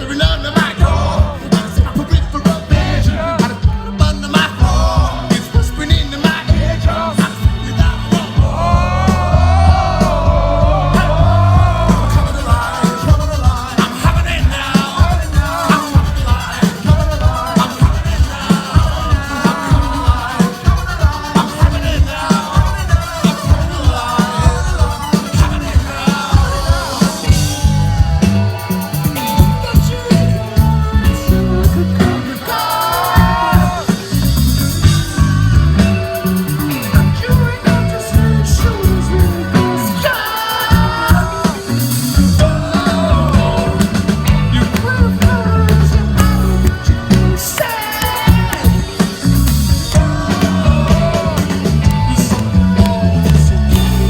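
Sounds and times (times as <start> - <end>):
drum beat: 0.0 - 54.0
live rock band: 0.0 - 54.0.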